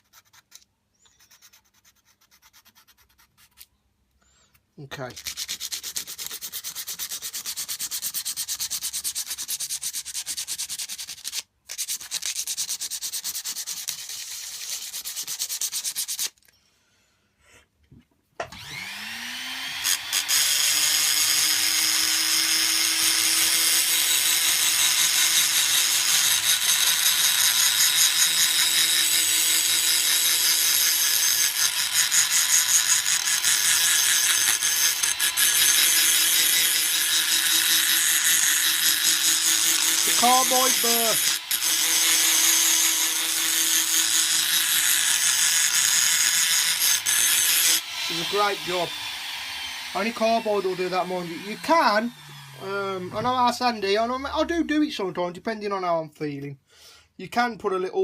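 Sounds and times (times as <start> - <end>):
sandpaper rubbing on steel: 0.0 - 3.7, 5.1 - 16.4, 33.8 - 41.3
rotary tool whine: 18.5 - 23.8, 24.7 - 53.5.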